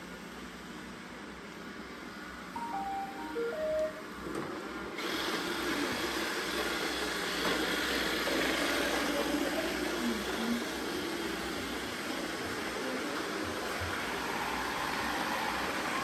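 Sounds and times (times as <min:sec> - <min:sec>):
robot vacuum cleaner whirring: 0:05.0 - 0:16.0.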